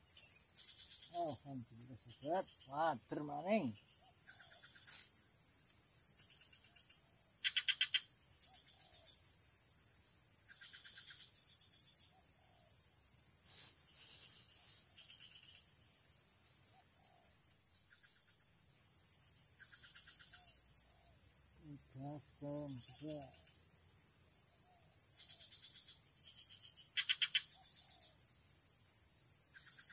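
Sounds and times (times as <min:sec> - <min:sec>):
frogs calling in pulsed trills: 0:00.0 - 0:05.0, 0:06.2 - 0:09.3, 0:10.4 - 0:12.8, 0:19.5 - 0:21.0, 0:21.6 - 0:23.6, 0:25.1 - 0:28.2, 0:29.5 - 0:29.9
high-pitched insect drone: 0:00.0 - 0:24.4.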